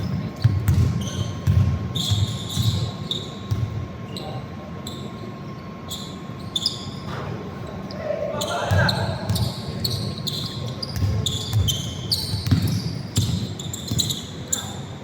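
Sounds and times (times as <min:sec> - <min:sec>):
sneakers squeaking on floor: 0:00.0 - 0:15.0
basketball bouncing on hardwood: 0:00.4 - 0:01.7, 0:12.4 - 0:13.4.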